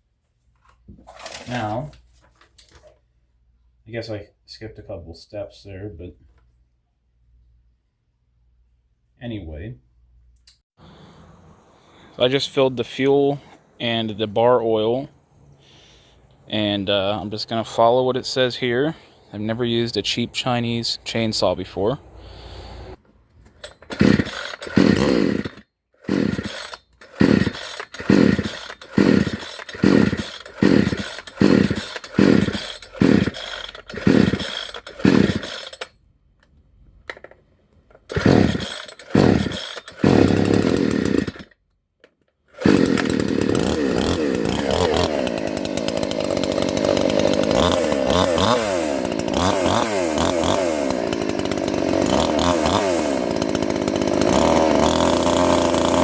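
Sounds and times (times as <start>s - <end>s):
chainsaw starter cord pulls: 1.1s - 1.8s, 23.4s - 36.0s, 37.1s - 56.0s
chainsaw engine revving: 23.6s - 35.9s, 38.1s - 41.6s, 42.6s - 56.0s.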